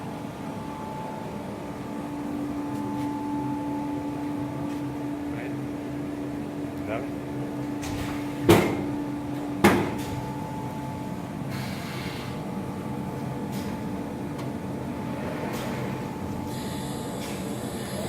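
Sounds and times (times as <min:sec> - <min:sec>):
machine humming: 0:16.0 - 0:18.0.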